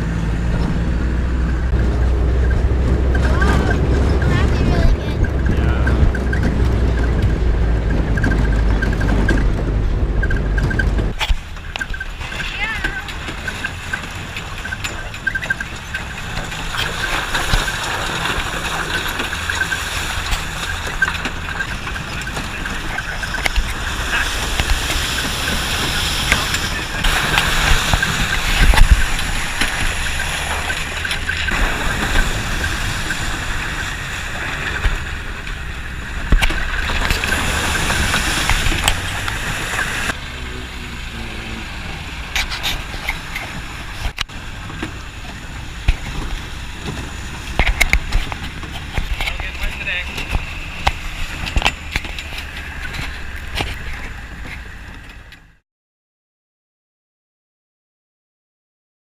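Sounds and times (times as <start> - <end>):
knocks and rattles: 0.0 - 40.2, 42.2 - 55.5
vehicle engine running: 0.0 - 55.6
faint voices: 3.1 - 6.2.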